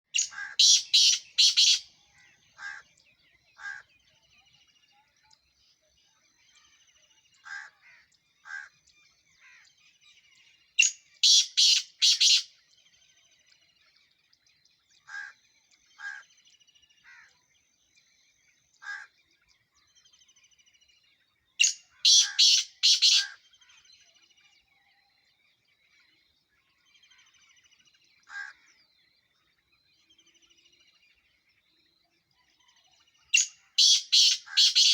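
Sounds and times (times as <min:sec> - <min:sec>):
small birds chirping: 0:00.0 - 0:34.9
francolin calling: 0:00.2 - 0:01.9, 0:10.8 - 0:12.5, 0:21.6 - 0:23.4, 0:33.4 - 0:34.9.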